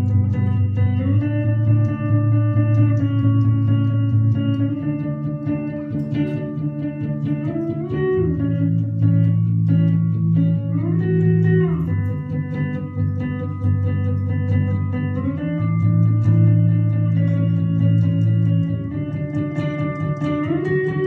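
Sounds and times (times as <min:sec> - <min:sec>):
bass guitar line: 0:00.0 - 0:21.0
electric guitar: 0:00.0 - 0:21.0.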